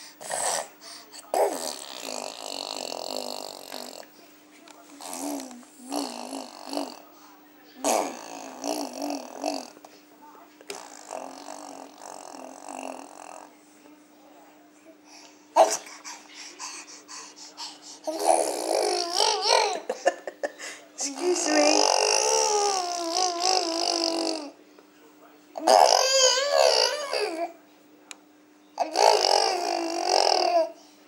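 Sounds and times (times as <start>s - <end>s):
baby blowing raspberries: 0.0s - 4.0s, 7.8s - 9.8s, 10.7s - 13.5s
baby babbling: 10.7s - 13.5s, 18.1s - 19.9s, 21.2s - 24.5s, 25.6s - 27.5s, 28.8s - 30.8s.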